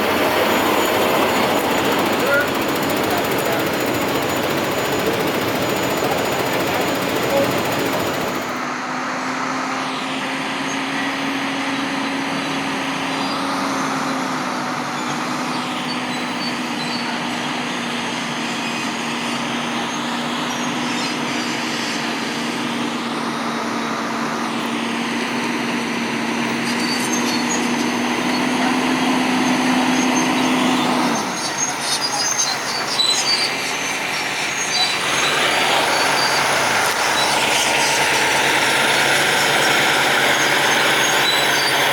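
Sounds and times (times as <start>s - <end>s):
rattles: 0.0s - 8.6s
diesel truck engine running: 0.0s - 8.7s, 34.9s - 41.9s
road noise: 0.0s - 8.7s.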